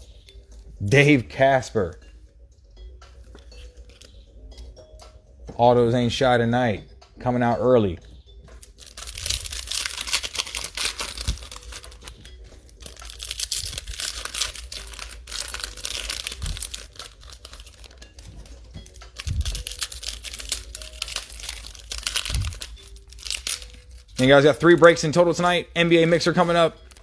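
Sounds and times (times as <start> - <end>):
wrappers tearing and crinkling: 8.6 - 24.9.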